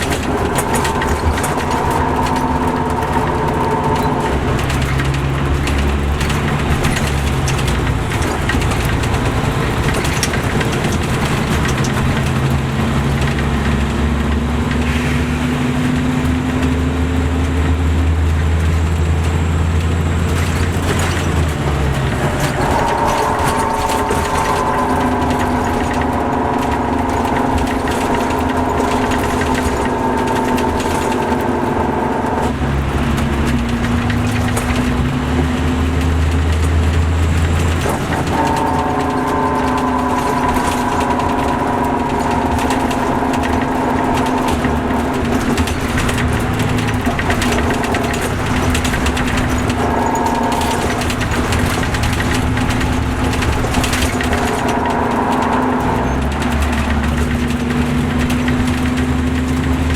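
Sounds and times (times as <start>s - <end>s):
mechanical whine: 0.0s - 13.5s, 18.5s - 59.0s
diesel engine rumble: 0.0s - 59.9s.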